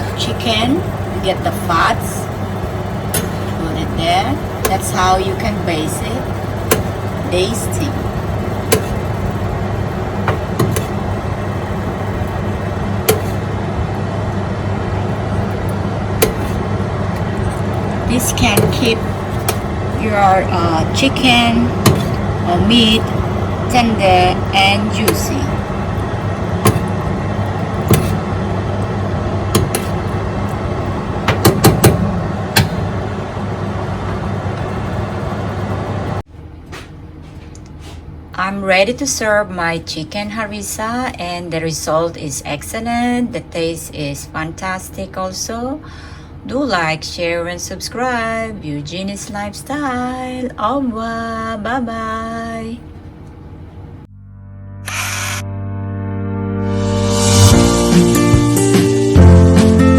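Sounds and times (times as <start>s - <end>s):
kitchen appliance humming: 0.0s - 36.3s.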